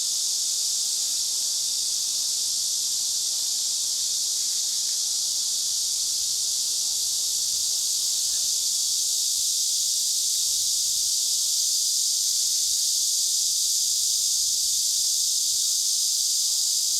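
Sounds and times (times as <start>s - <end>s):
cicadas buzzing: 0.0s - 16.9s.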